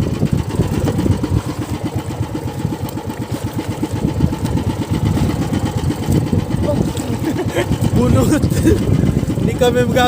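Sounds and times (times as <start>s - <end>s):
boat engine idling: 0.0s - 10.0s.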